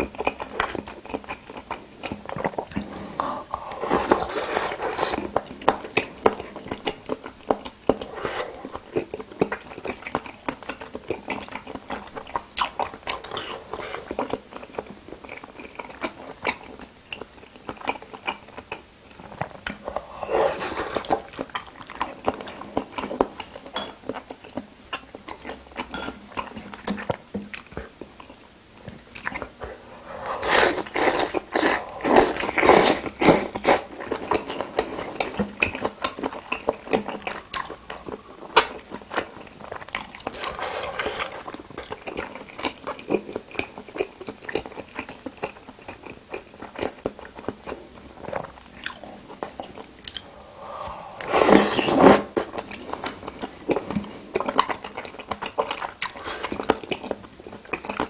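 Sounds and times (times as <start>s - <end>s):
person chewing: 0.0s - 58.0s.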